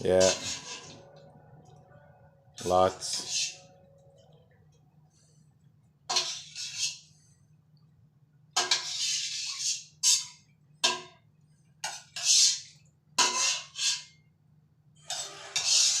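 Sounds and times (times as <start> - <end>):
pan hissing and scraping: 0.0 - 1.1, 3.0 - 3.7, 15.0 - 16.0.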